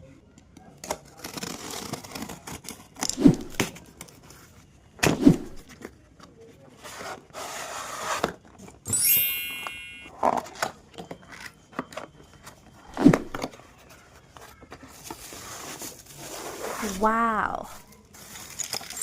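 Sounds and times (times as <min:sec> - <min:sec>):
packaging rustling and scraping: 0:00.8 - 0:08.8, 0:10.1 - 0:17.0, 0:17.7 - 0:19.0
ringing tone: 0:08.9 - 0:10.4.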